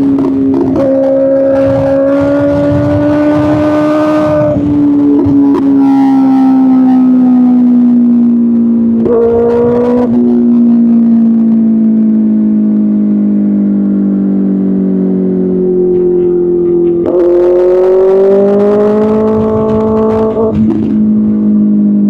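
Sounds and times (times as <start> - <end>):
motorcycle engine at high revs: 0.0 - 22.0.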